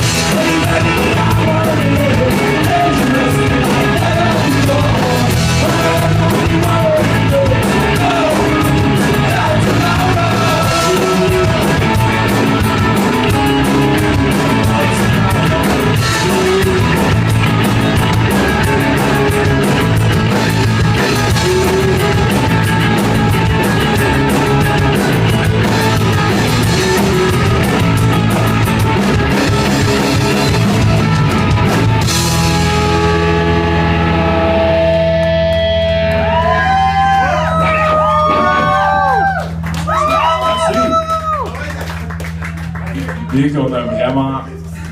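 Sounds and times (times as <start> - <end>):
person singing: 0.0 - 13.0, 13.6 - 17.2
ringing guitar chords: 0.0 - 40.8
punk rock band playing live: 0.0 - 43.1.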